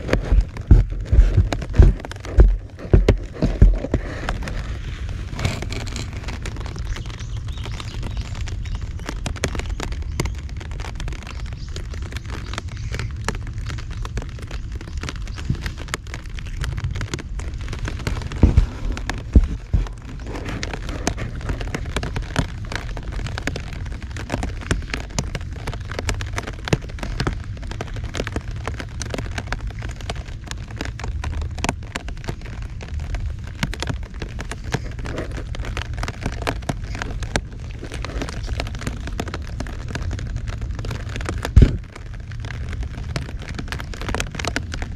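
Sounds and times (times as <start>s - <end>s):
loud thumps: 0.0s - 4.1s, 41.5s - 41.9s
heavy rain: 0.0s - 44.9s.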